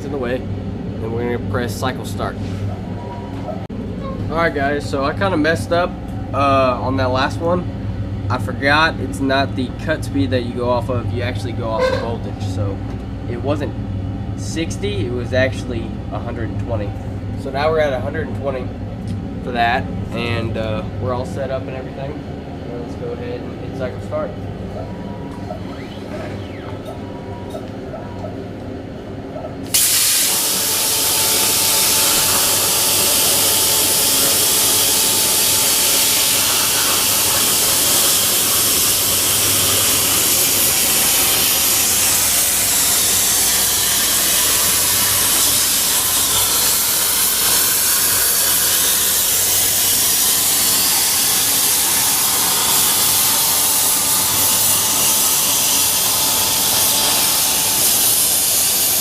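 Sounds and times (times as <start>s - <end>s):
plasma cutter hissing: 29.7s - 59.0s.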